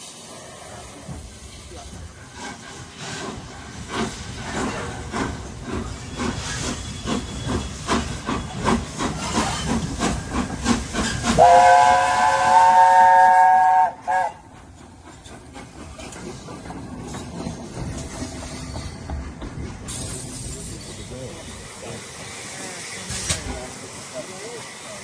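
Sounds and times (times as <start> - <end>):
steam locomotive chuffing: 0.2 - 25.0
steam whistle long blast: 11.4 - 14.4.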